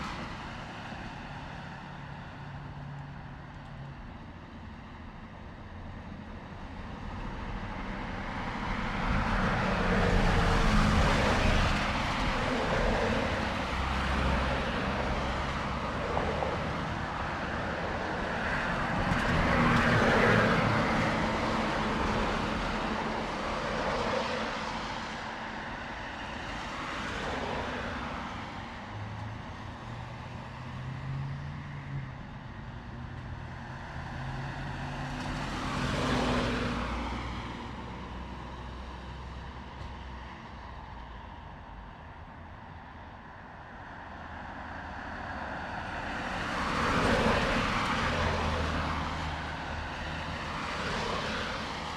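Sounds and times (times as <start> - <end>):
cars passing: 8.1 - 40.8, 44.1 - 51.9.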